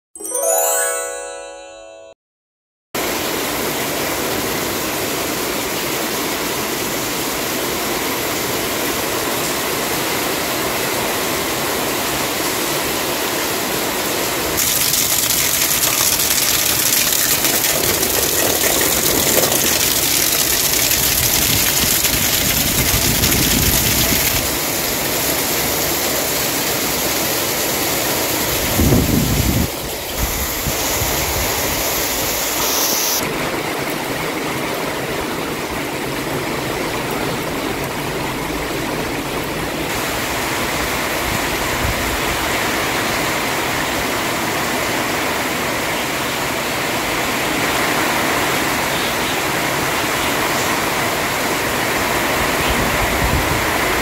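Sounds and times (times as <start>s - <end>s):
chime-like musical tone: 0.2s - 2.2s
heavy rain: 3.0s - 28.8s, 33.2s - 54.0s.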